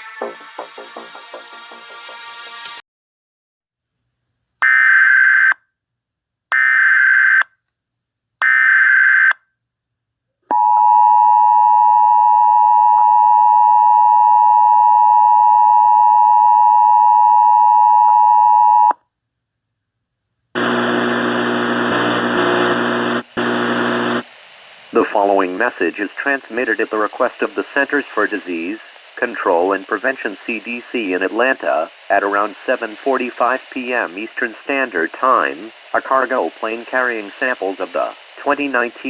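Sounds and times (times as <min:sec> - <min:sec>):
electronic music: 0:00.0 - 0:02.8
noise hiss: 0:20.6 - 0:39.0.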